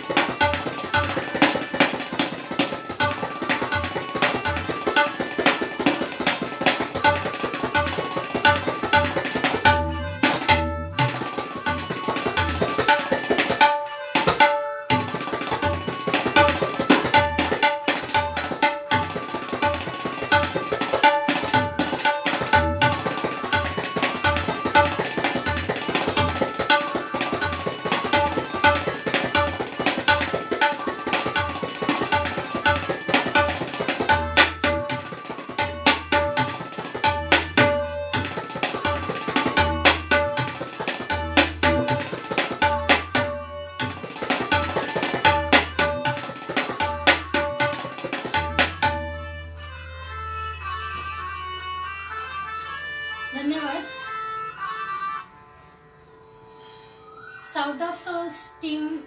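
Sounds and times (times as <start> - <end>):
tabla ringing strokes: 0.0 - 52.0
tabla deep bass strokes: 9.6 - 12.7, 22.5 - 23.0, 34.1 - 35.0, 37.0 - 38.2, 39.6 - 40.5, 41.1 - 42.1, 46.8 - 51.4.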